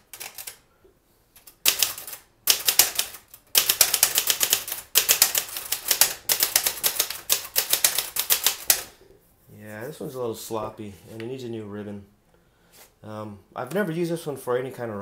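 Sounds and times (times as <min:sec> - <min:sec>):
manual typewriter keys clacking: 0:00.0 - 0:00.6, 0:01.4 - 0:08.9.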